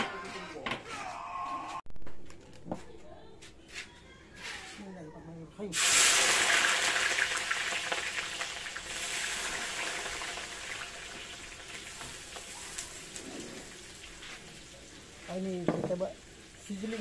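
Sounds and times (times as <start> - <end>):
food sizzling in hot oil: 5.7 - 17.0.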